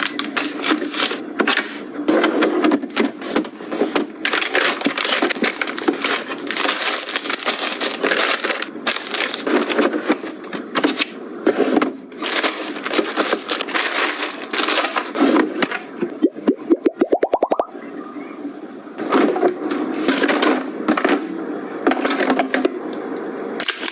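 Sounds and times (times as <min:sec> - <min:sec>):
plastic packaging crinkling: 0:03.2 - 0:10.9, 0:12.2 - 0:15.2.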